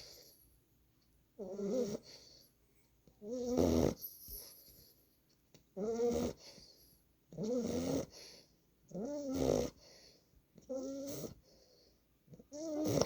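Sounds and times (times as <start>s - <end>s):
puppy snoring: 1.4s - 2.4s, 3.2s - 4.9s, 5.7s - 13.0s.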